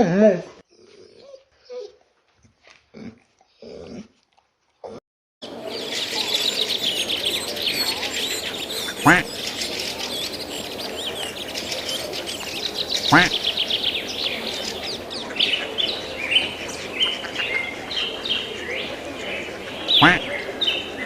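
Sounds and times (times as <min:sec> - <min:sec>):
animal sounds: 0:02.6 - 0:21.0
birds chirping in chorus: 0:05.4 - 0:21.0.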